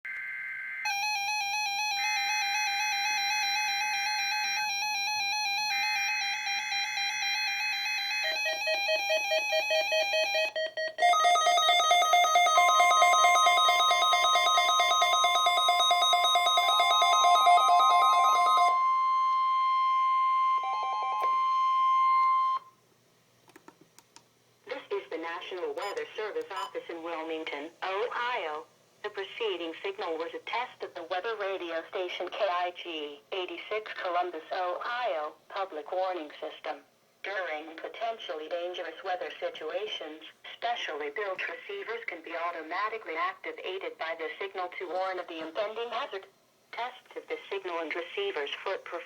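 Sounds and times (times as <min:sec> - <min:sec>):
steady high alarm tone: 0:00.1 - 0:22.7.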